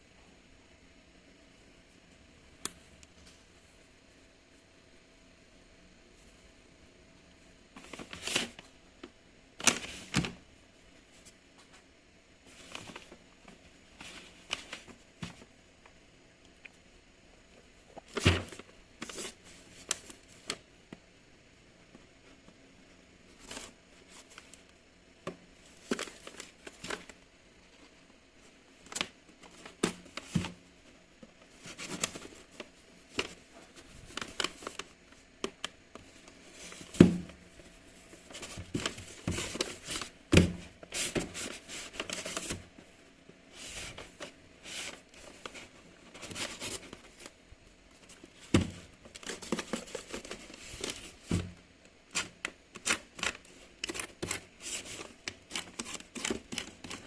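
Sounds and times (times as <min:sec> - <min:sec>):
packaging crinkling and tearing: 0:52.1 - 0:57.0.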